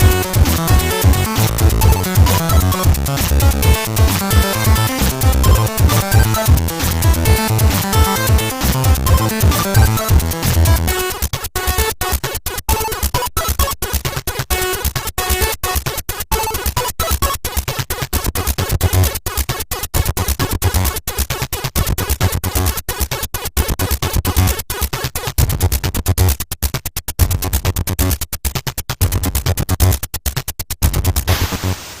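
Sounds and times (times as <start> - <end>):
deep bass: 0.0 - 10.8
stuttering buzzing synth: 0.0 - 11.9.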